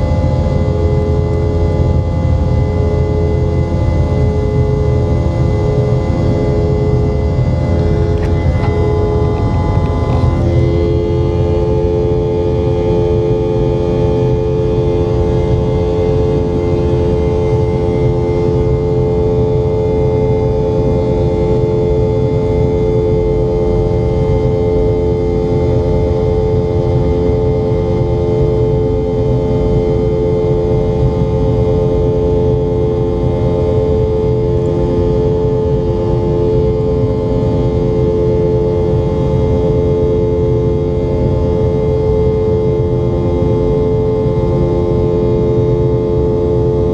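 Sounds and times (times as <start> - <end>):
airplane cabin engine drone: 0.0 - 46.9
steady humming tones: 0.0 - 46.9.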